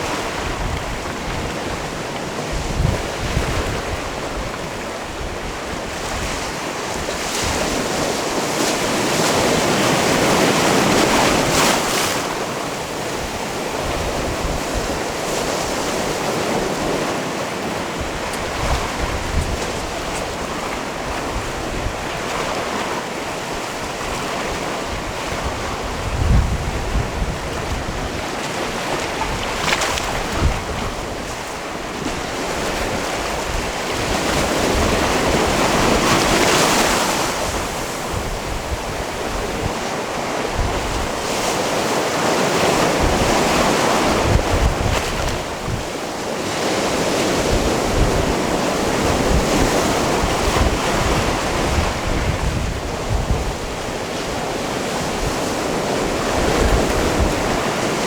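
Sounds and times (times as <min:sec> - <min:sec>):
wind thumps on microphone: 0:00.0 - 0:08.2, 0:18.0 - 0:22.5, 0:23.9 - 0:41.4, 0:42.8 - 0:45.9, 0:46.9 - 0:58.0
sea waves on rocky shore: 0:00.0 - 0:58.0.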